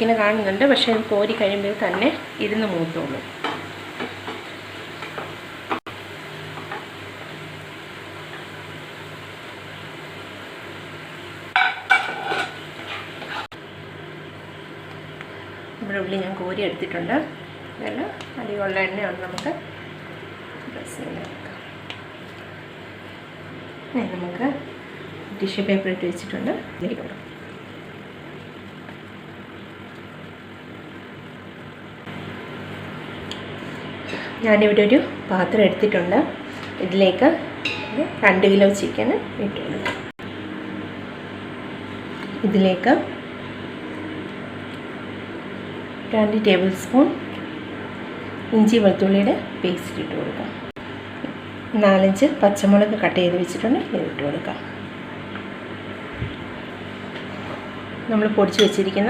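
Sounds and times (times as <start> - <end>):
onions sizzling in hot oil: 0.0 - 39.7
utensil scraping pan: 11.6 - 13.6.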